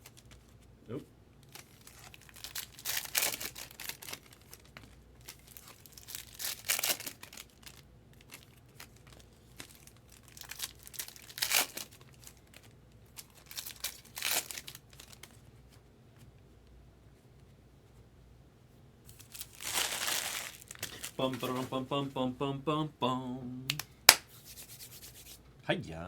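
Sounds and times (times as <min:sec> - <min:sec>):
foil wrappers crinkling and tearing: 0:01.4 - 0:15.5, 0:19.1 - 0:21.7.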